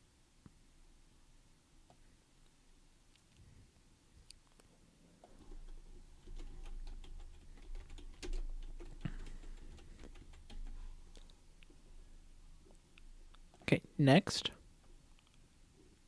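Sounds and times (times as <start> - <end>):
typing on keyboard: 5.2 - 11.4.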